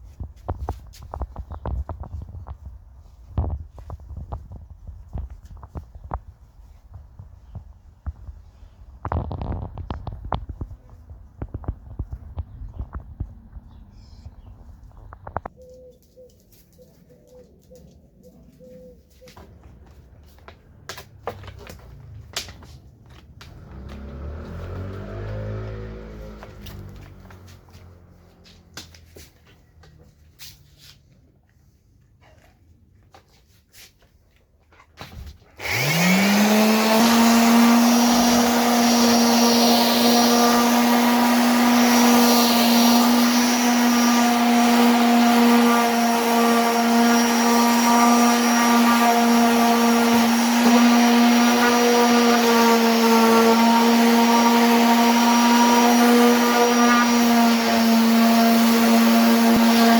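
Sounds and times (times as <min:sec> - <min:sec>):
electric motor humming: 0:35.6 - 0:59.9.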